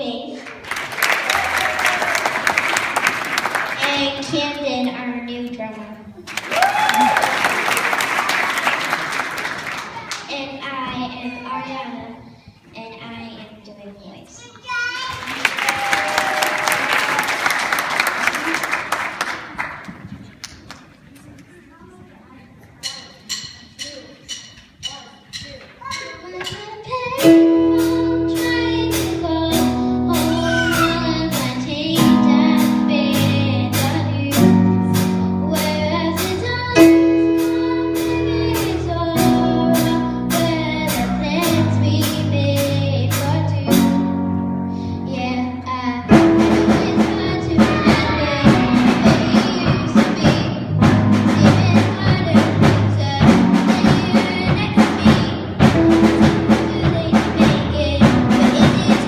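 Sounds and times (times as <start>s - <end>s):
drum kit: 22.8s - 44.2s, 46.1s - 59.0s
bass: 22.8s - 59.0s
live band playing: 22.9s - 45.5s, 46.1s - 59.0s
piano chords: 27.1s - 59.0s.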